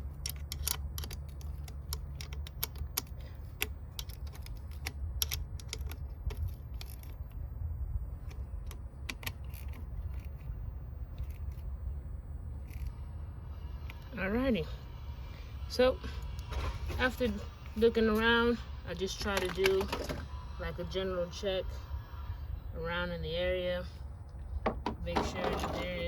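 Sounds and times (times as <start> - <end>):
hand tools clicking and clinking: 0.0 - 7.1, 25.2 - 26.0
low background rumble: 0.0 - 26.0.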